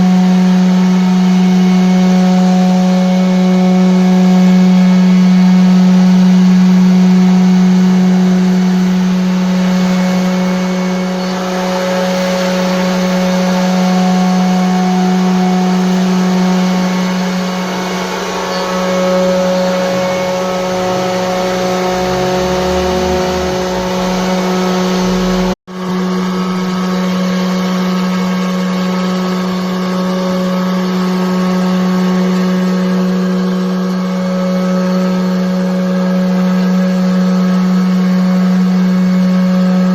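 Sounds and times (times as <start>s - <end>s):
router cutting wood: 0.0s - 26.0s.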